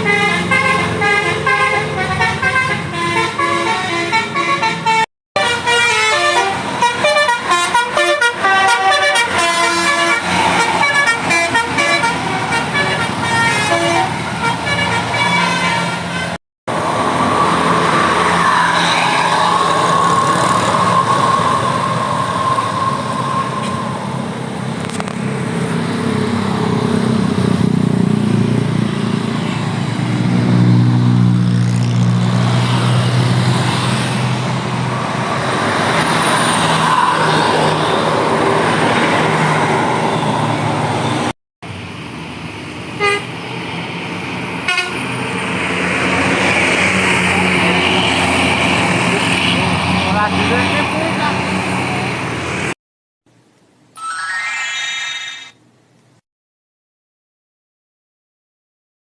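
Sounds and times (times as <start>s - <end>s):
multi-tone bus air horn melody: 0.0s - 16.4s, 43.0s - 43.3s, 44.7s - 45.0s
bus engine: 0.0s - 52.8s
road noise: 0.0s - 56.2s.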